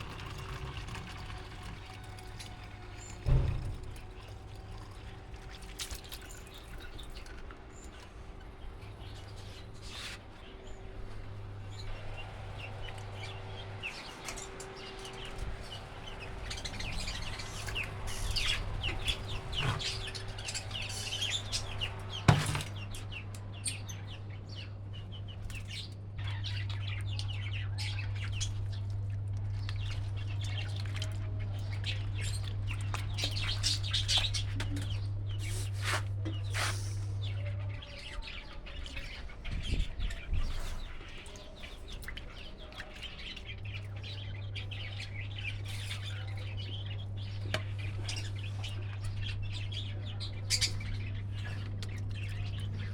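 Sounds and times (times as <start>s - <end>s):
parrots chirping and chattering: 2.4s - 52.9s.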